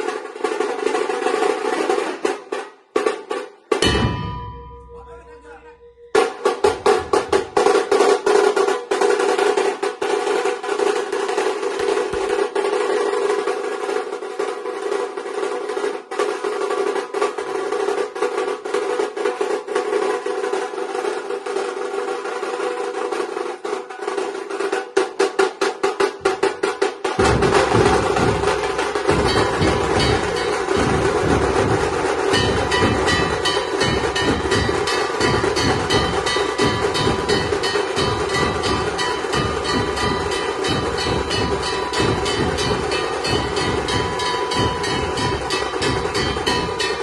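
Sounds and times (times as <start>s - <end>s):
drum troupe playing: 0.0s - 47.0s
deep heavy drum: 3.8s - 8.1s, 26.2s - 47.0s.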